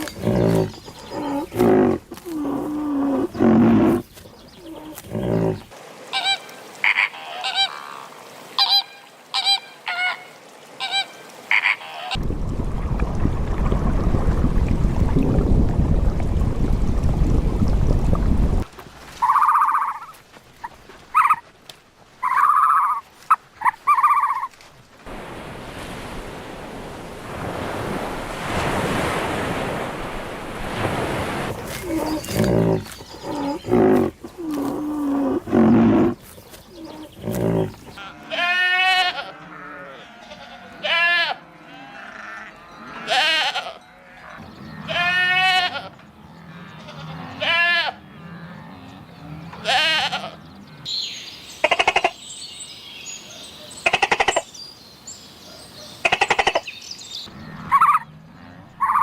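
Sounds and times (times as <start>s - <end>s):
goat bleating: 38.0s - 42.4s, 43.0s - 43.8s, 44.9s - 45.9s, 46.8s - 48.0s, 49.6s - 50.4s.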